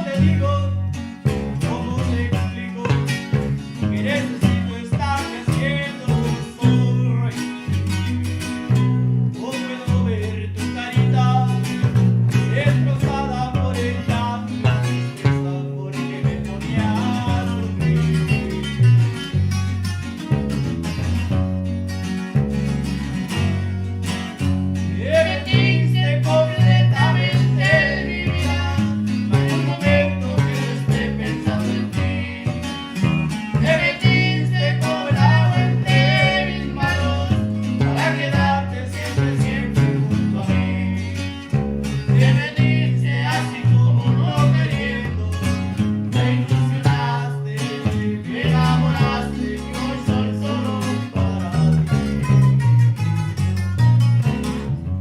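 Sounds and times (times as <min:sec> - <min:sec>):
live band with guitars and bass: 0:00.0 - 0:55.0.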